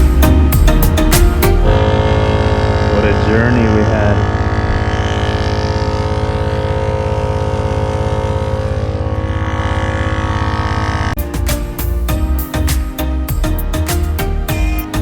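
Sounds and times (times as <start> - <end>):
guitar music: 0.0 - 4.8, 11.2 - 15.0
car engine idling: 0.0 - 11.2.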